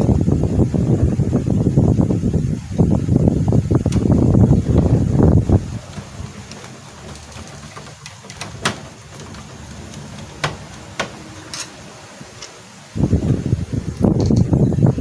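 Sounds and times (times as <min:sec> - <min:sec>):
small parts clicking and tapping: 0:05.8 - 0:11.8.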